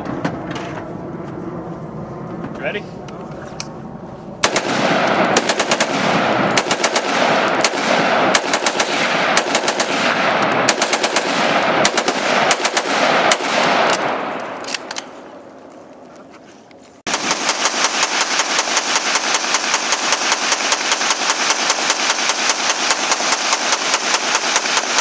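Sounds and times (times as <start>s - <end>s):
rapid gunfire: 4.4s - 14.0s, 17.1s - 25.0s.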